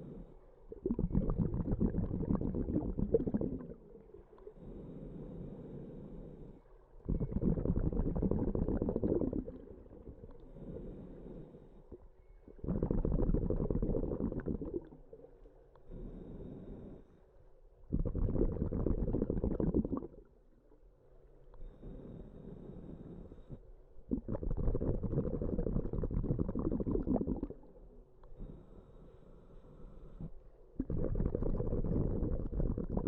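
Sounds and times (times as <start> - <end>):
bubbling exhalations through regulator: 0.7 - 4.6, 7.0 - 10.6, 11.8 - 15.5, 17.9 - 20.4, 24.0 - 27.9, 30.8 - 33.0.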